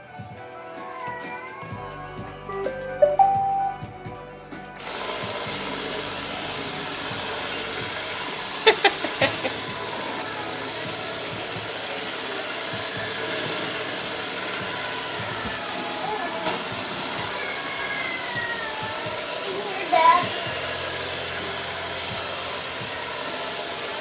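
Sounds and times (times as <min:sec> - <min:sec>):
background music: 0:00.0 - 0:24.0
robot vacuum whirring: 0:04.8 - 0:24.0.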